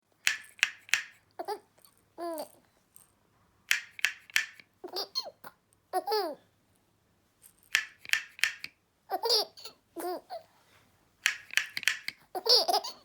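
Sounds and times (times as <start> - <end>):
baby laughing: 1.4 - 2.6, 4.8 - 6.4, 9.1 - 10.4, 12.3 - 13.0.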